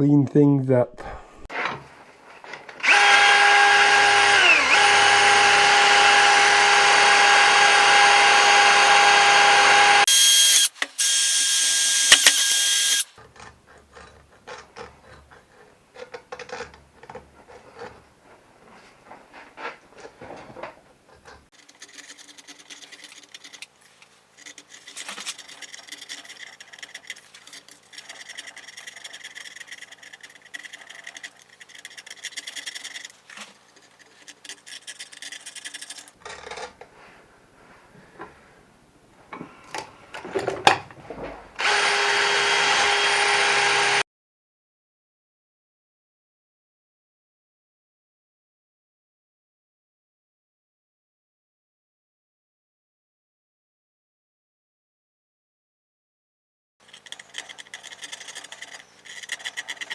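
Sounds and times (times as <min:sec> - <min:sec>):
power drill whining: 0:02.8 - 0:13.2, 0:41.6 - 0:44.0
faint scraping: 0:21.6 - 0:36.2, 0:56.8 - 0:59.9.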